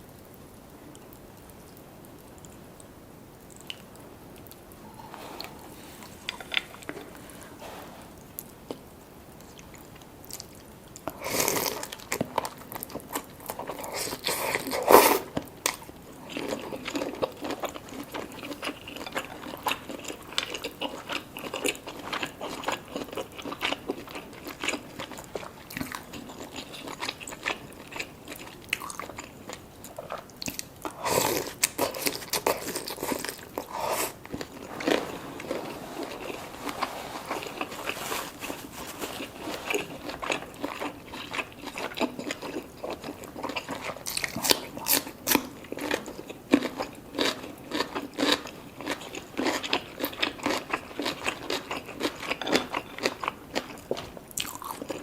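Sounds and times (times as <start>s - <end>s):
person chewing food: 3.4s - 8.8s, 9.4s - 55.0s.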